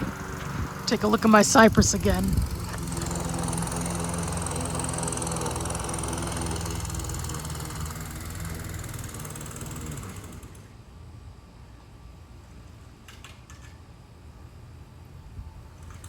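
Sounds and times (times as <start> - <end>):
petrol lawn mower engine running: 0.0 - 10.8.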